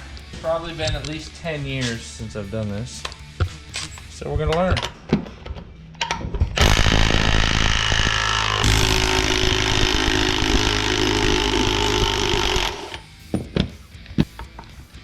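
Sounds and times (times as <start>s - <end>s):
power tool running: 6.6s - 13.0s.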